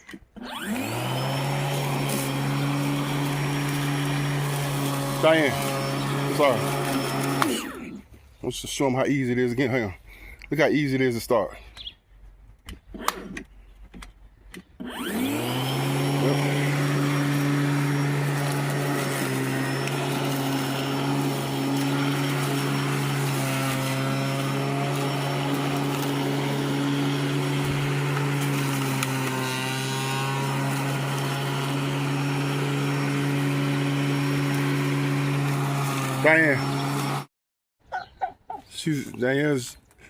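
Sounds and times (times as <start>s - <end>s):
electric lawnmower motor humming: 0.4s - 8.0s, 14.8s - 37.3s.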